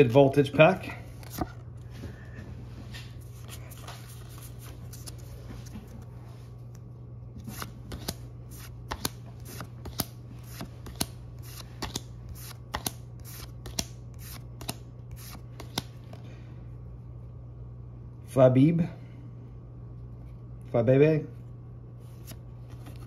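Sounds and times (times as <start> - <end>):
trading cards snapping: 7.5 - 16.0.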